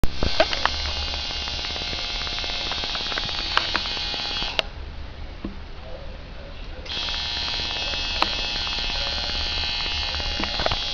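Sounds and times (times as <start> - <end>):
tattoo machine buzzing: 0.0 - 4.6, 6.9 - 10.9.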